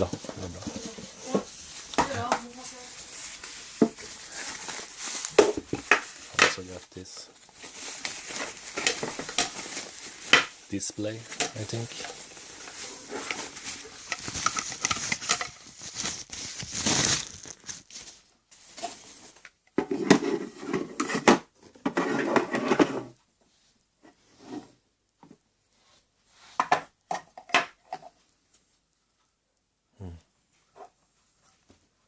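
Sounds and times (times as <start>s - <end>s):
packaging rustling and crinkling: 0.0s - 20.5s.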